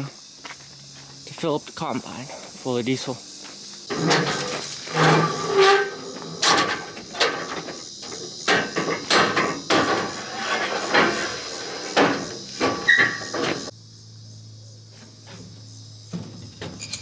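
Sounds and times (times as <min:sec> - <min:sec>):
sharp knocks and clanks: 0:03.9 - 0:13.7.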